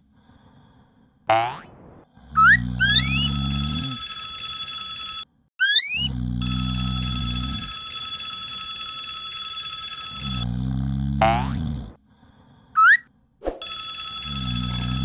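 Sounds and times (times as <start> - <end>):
steady high ringing tone: 3.0 - 5.2, 6.4 - 10.5, 13.6 - 15.0.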